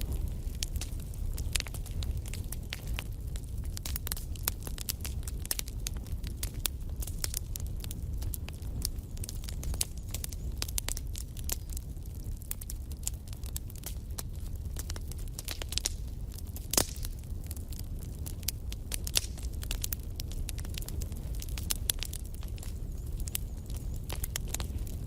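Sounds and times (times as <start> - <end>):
low rumble of flames: 0.0 - 25.0
wood fire crackling: 0.0 - 25.0
sharp pops and snaps: 16.6 - 17.1, 18.4 - 22.7.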